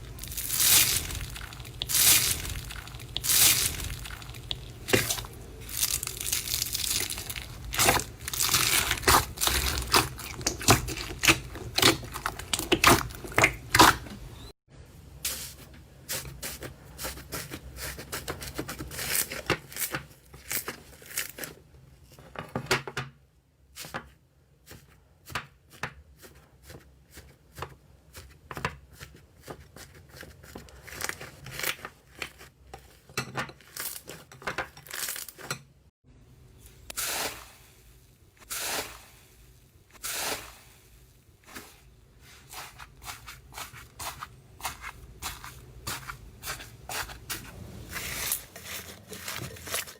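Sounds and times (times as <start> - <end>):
slime crackling and squelching: 0.0 - 14.5, 29.0 - 32.6, 38.4 - 49.9.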